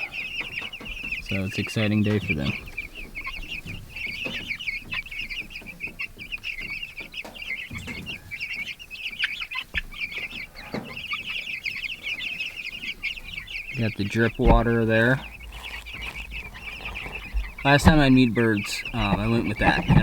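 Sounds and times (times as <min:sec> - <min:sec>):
chicks peeping: 0:00.0 - 0:20.0
faint knocks: 0:12.8 - 0:20.0.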